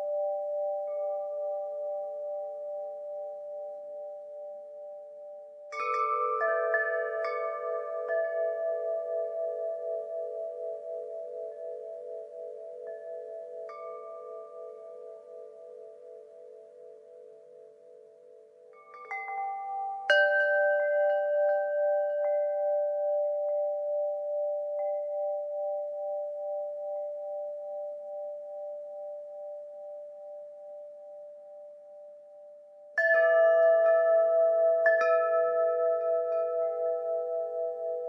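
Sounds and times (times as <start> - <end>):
wind chimes ringing: 5.8 - 17.4, 18.7 - 28.4.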